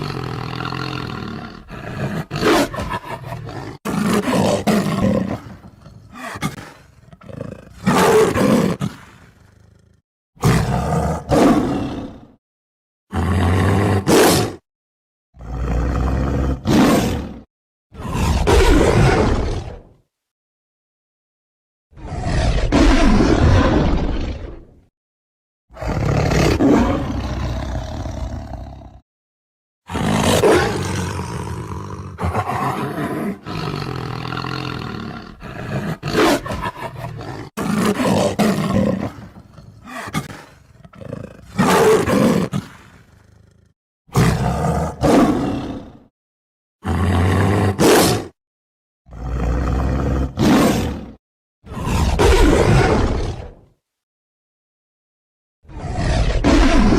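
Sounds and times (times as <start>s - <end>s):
tiger roaring and growling: 0.0s - 12.4s, 13.1s - 14.6s, 15.4s - 20.0s, 21.9s - 24.9s, 25.7s - 29.0s, 29.9s - 46.1s, 46.8s - 48.4s, 49.1s - 53.8s, 55.6s - 56.9s.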